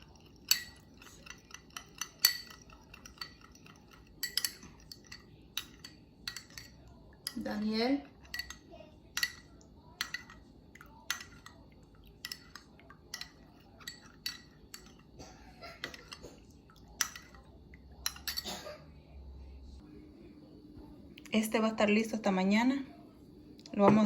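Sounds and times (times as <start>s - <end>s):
spoon clinking against container: 0.0s - 11.6s, 12.2s - 15.2s, 15.8s - 16.3s, 17.0s - 18.6s.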